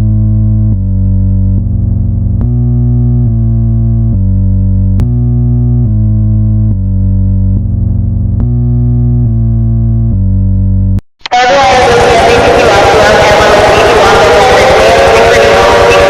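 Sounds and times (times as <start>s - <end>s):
buzzy synth alarm notes: 11.3s - 16.0s.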